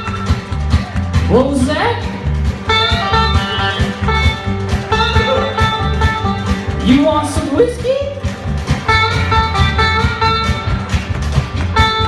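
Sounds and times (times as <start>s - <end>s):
plucked guitar notes: 0.0s - 12.0s
steady bass beat: 0.0s - 12.0s.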